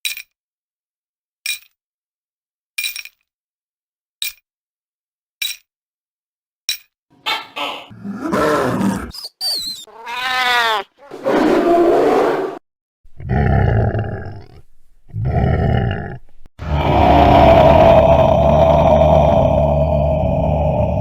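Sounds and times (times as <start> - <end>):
monster roaring: 7.9 - 9.2, 13.2 - 21.0
high wavering whistle: 9.2 - 9.9.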